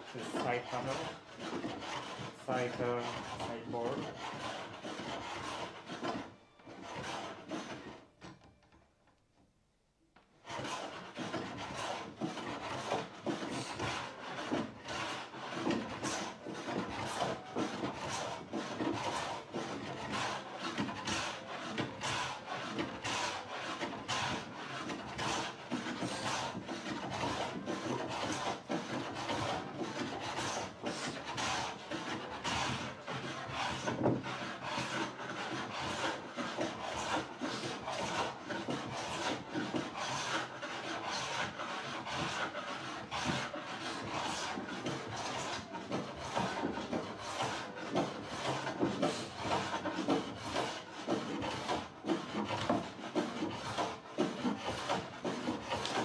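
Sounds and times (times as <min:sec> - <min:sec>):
hand sanding wood: 0:00.0 - 0:08.0, 0:10.4 - 0:56.0.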